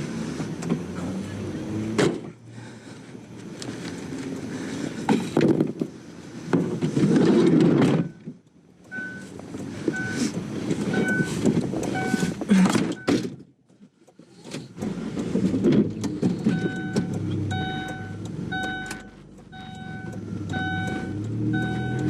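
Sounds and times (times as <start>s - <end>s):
electronic warning chime: 9.0s - 9.3s, 11.0s - 12.3s, 16.5s - 22.0s.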